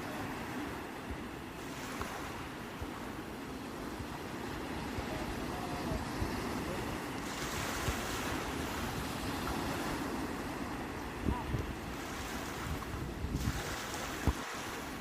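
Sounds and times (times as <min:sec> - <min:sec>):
sea waves on shore: 0:00.0 - 0:15.0.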